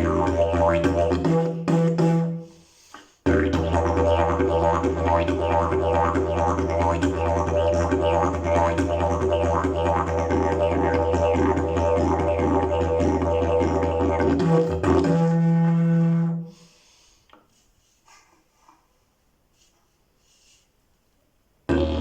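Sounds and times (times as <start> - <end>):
didgeridoo drone: 0.0 - 2.3, 3.3 - 16.4, 21.7 - 22.0.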